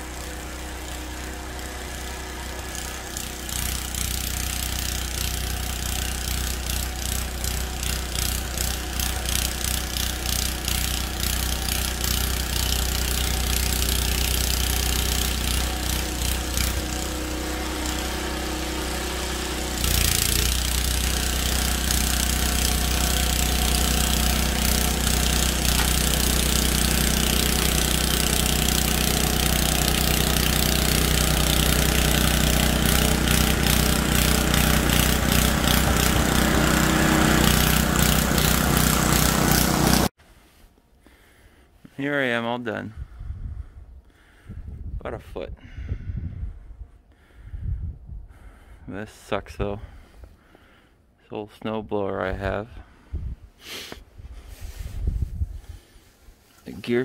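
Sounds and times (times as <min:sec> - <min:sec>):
snow blower engine running: 0:00.0 - 0:40.2.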